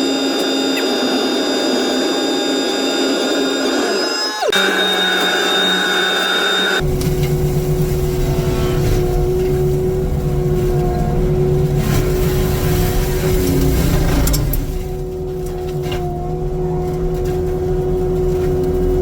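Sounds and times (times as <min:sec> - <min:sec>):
diesel engine running with whine: 0:00.0 - 0:19.0
deep engine rumble: 0:06.8 - 0:19.0.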